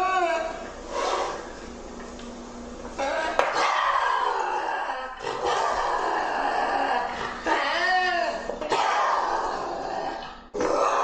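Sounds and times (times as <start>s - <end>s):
lynx yowl: 3.0s - 11.0s.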